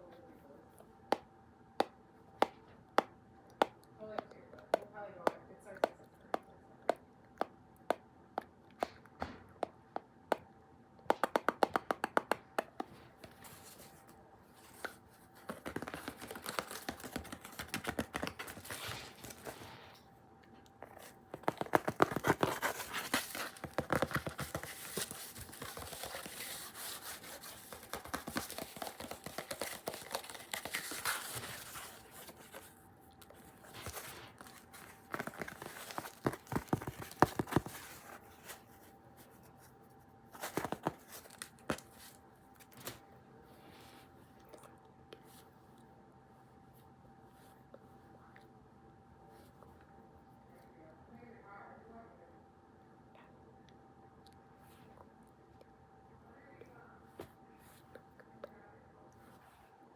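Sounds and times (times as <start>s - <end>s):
tapping on objects: 11.1s - 13.4s, 14.8s - 19.6s, 20.8s - 38.2s
scratching and crinkling: 11.2s - 44.2s.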